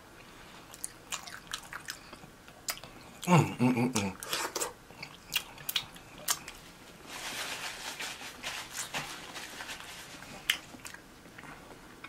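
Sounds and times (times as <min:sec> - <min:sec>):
wet chewing and smacking: 0:00.7 - 0:03.3, 0:04.0 - 0:06.6, 0:10.2 - 0:11.6.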